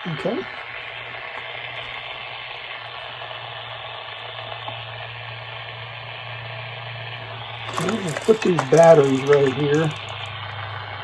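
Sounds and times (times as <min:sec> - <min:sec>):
radio static hiss with low hum: 0:00.0 - 0:06.2.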